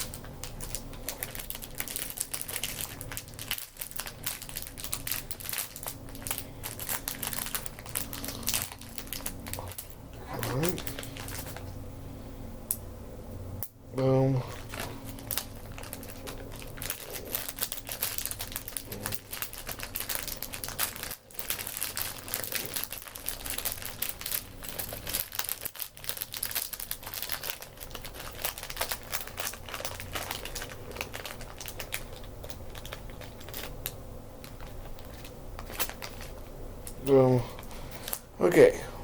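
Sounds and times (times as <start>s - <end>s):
plastic bags crinkling: 0.0s - 11.8s, 14.4s - 38.3s
plastic pieces clicking and rattling: 15.3s - 37.0s.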